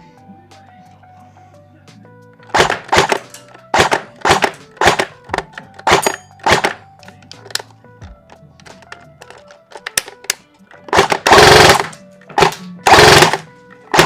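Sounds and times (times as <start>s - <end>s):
background music: 0.0s - 14.0s
airsoft rifle shots: 2.5s - 6.8s, 10.9s - 14.0s
pellets hitting target: 2.5s - 6.8s.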